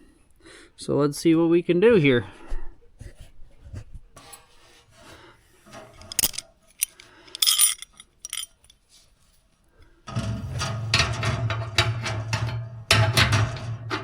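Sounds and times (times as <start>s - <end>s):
metal tools scraping: 5.7s - 8.8s
metallic clinks: 5.9s - 8.8s.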